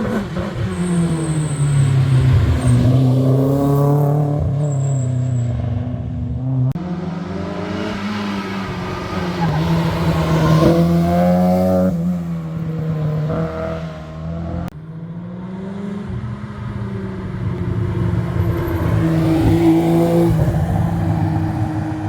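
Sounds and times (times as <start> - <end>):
rally car engines revving: 0.0 - 22.0
car accelerating closer: 5.6 - 22.0.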